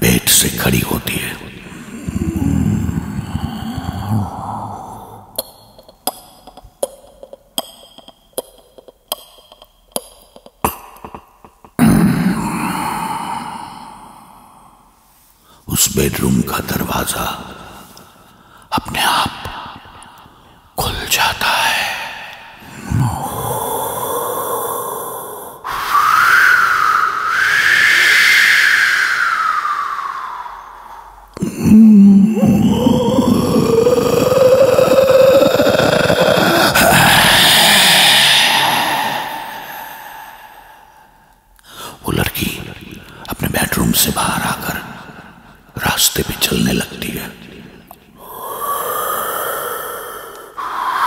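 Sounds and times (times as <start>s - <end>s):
vocal mimicry of creaking door: 1.7s - 7.6s, 31.4s - 40.0s
vocal mimicry of clicks: 5.3s - 11.8s.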